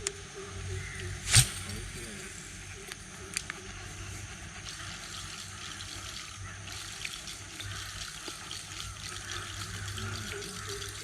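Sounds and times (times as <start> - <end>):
stream trickling: 4.2 - 11.0.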